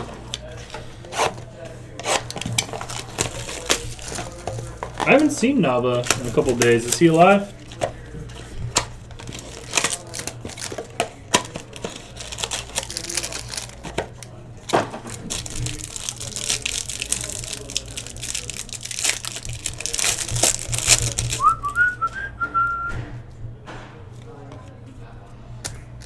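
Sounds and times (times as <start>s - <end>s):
cards clicking and tapping: 0.0s - 22.0s, 25.6s - 26.0s
wrappers tearing and crinkling: 0.0s - 22.1s
person whistling: 21.4s - 23.1s.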